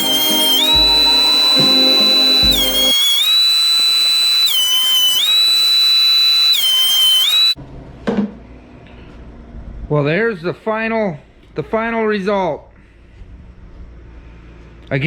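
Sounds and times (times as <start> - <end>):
whistle-like synth tone: 0.0 - 7.6.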